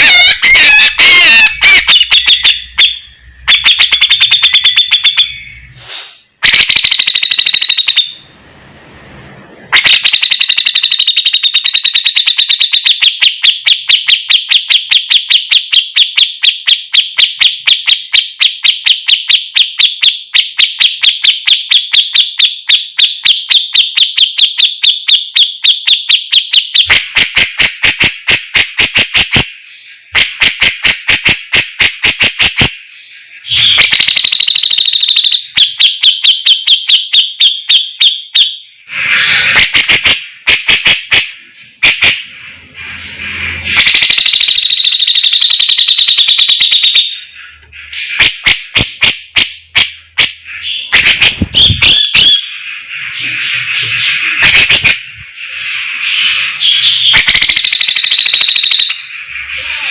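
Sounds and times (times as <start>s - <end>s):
bulbul singing sharp high notes: 0.0s - 8.2s.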